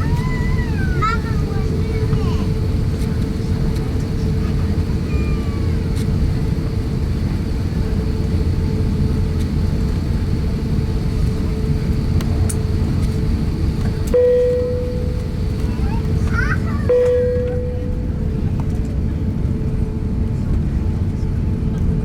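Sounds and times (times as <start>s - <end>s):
aircraft cabin low rumble: 0.0s - 22.0s
faint steady hum: 14.1s - 18.7s.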